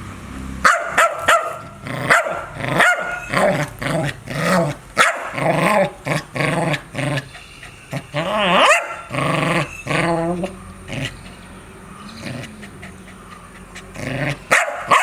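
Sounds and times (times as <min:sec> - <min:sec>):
dog barking: 0:00.6 - 0:06.3, 0:08.0 - 0:09.2, 0:14.2 - 0:15.0.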